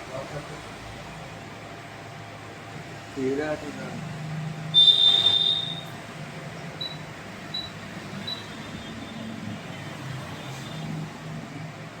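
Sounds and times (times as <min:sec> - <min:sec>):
loud high tone: 0:04.8 - 0:05.9.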